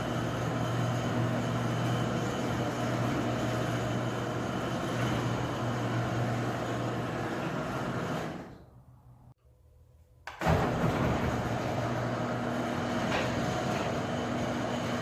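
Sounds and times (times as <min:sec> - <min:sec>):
garage door rolling rattle: 0:00.0 - 0:08.8, 0:10.3 - 0:15.0
garage door opener motor hum: 0:00.0 - 0:09.2, 0:10.3 - 0:15.0.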